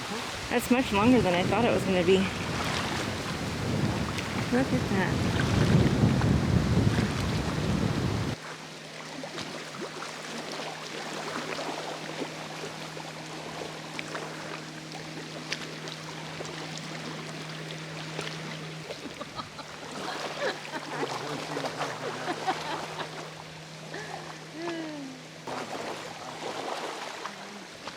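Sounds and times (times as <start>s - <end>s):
steady low hum: 12.0s - 27.9s.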